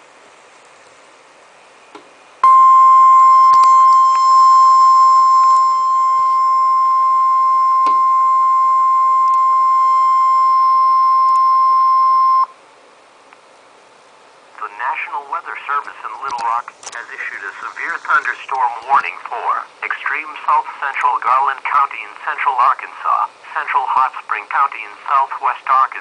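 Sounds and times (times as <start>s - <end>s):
loud steady warning beep: 2.4s - 12.6s
faint radio hiss: 12.5s - 26.0s.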